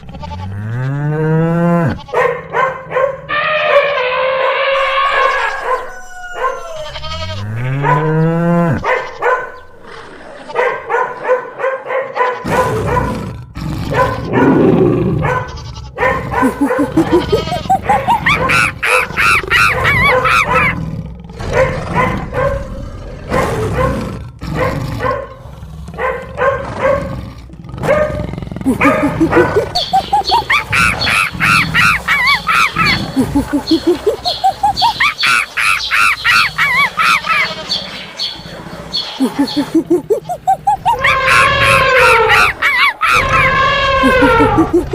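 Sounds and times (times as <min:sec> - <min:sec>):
rapid repeated animal cries: 0:00.0 - 0:00.8, 0:03.3 - 0:11.1, 0:15.5 - 0:20.8, 0:28.7 - 0:44.9
cartoon rising pitched call: 0:03.3 - 0:07.8, 0:28.8 - 0:37.5, 0:39.2 - 0:44.9.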